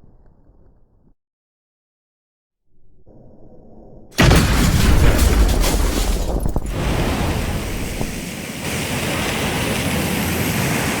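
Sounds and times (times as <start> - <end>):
explosion rumbling roar: 4.2 - 8.4.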